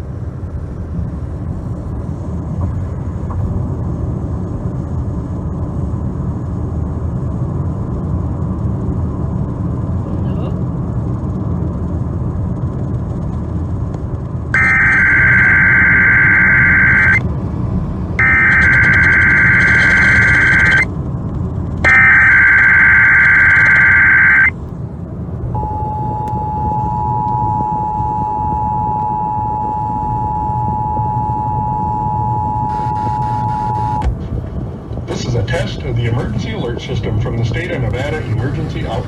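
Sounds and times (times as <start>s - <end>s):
low rumble: 0.0s - 39.0s
digital header tone bursts: 14.6s - 17.2s, 18.2s - 20.9s, 21.9s - 24.5s
two-tone attention signal: 14.6s - 17.2s, 18.2s - 20.9s, 21.9s - 24.5s, 25.6s - 34.0s.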